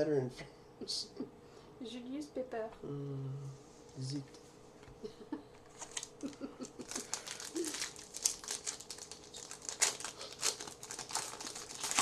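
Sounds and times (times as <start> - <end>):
trading cards crinkling and rustling: 5.6 - 12.0.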